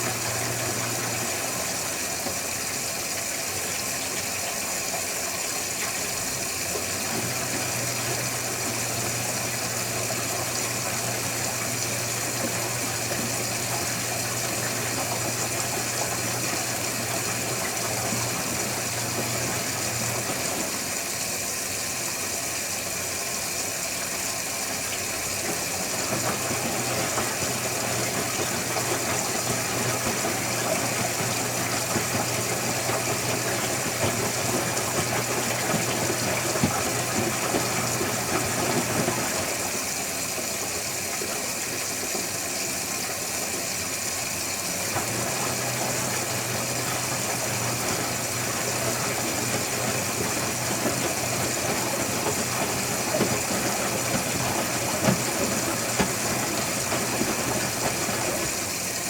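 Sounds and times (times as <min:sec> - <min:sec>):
washing machine wash noise: 0:00.0 - 0:59.0
low motor hum: 0:06.7 - 0:20.9, 0:25.7 - 0:39.9, 0:44.9 - 0:58.8.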